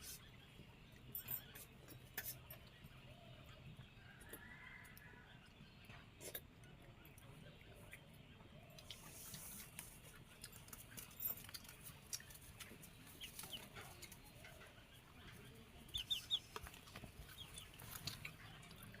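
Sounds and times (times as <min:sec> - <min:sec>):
faint bird chirps: 0:12.2 - 0:19.0.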